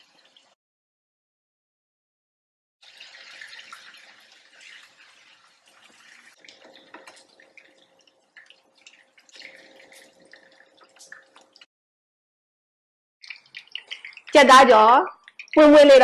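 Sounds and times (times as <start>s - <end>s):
chicken deep-frying in hot oil: 0.0s - 0.6s, 2.8s - 11.7s, 13.2s - 16.0s.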